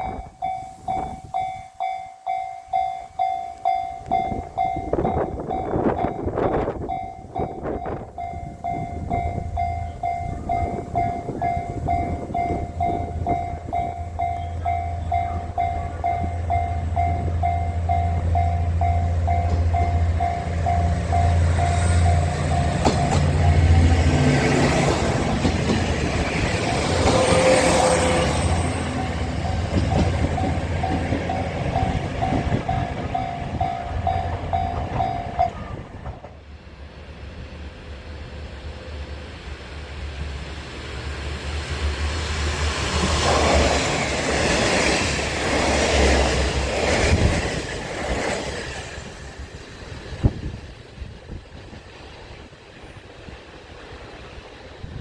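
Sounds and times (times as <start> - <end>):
diesel train engine drone: 0.0 - 55.0
level crossing bell ringing: 0.1 - 23.7.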